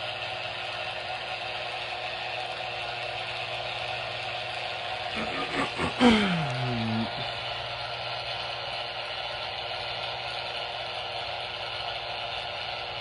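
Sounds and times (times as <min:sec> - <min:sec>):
faint hum: 0:05.1 - 0:07.8.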